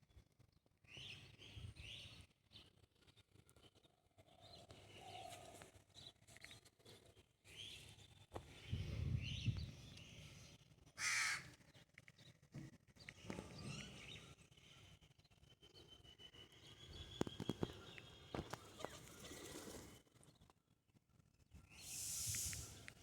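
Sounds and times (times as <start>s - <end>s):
crow cawing: 11.0s - 11.5s.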